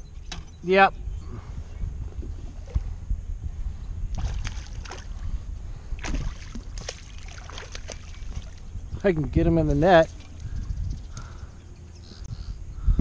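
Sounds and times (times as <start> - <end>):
wind rumble on microphone: 0.0 - 13.0
fish splashing: 4.2 - 5.2, 6.0 - 8.7.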